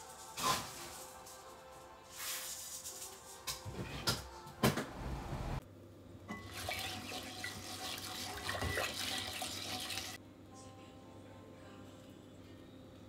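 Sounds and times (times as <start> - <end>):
tap water running into sink: 6.4 - 10.2.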